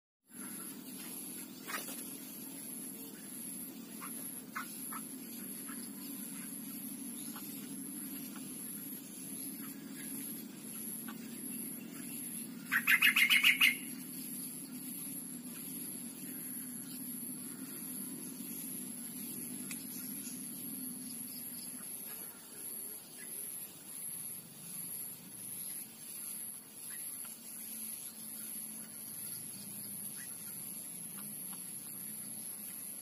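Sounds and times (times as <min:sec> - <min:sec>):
faint bird chirps: 0:00.3 - 0:33.0
low hum: 0:00.3 - 0:33.0
bird chattering: 0:03.9 - 0:14.0.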